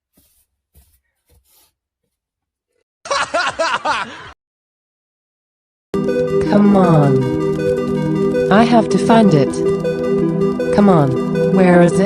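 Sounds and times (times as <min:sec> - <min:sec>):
burst of laughter: 0:03.1 - 0:04.3.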